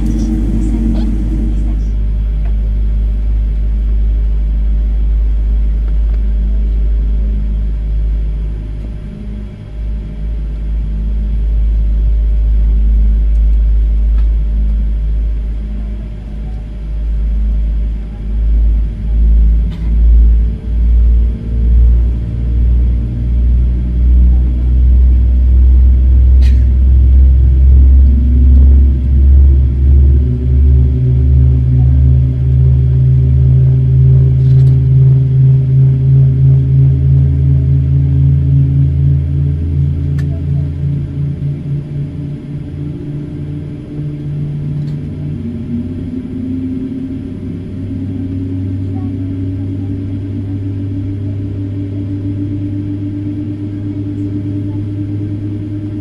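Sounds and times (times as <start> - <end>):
jet engine running: 0.0 - 56.0.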